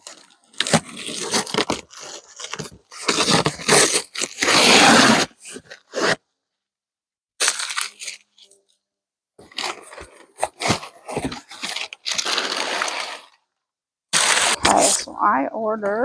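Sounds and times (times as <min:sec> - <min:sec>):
cardboard box tearing: 0:00.5 - 0:06.2, 0:09.4 - 0:13.4, 0:14.2 - 0:15.0.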